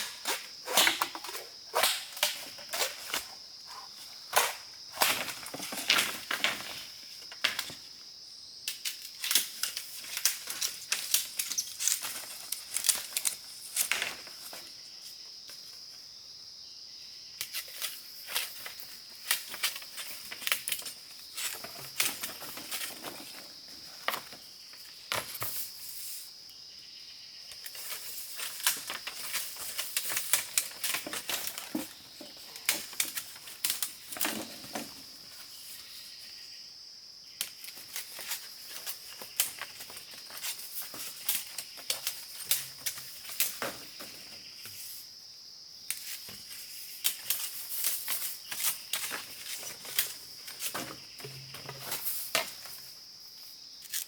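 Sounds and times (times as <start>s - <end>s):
rustling of handling: 9.4s - 15.7s, 17.5s - 26.0s, 27.5s - 36.2s, 37.4s - 45.1s, 45.9s - 53.0s.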